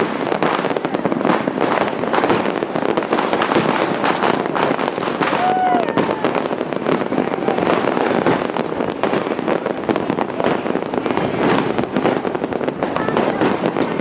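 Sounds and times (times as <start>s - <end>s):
firecrackers and fireworks exploding: 0.0s - 14.0s.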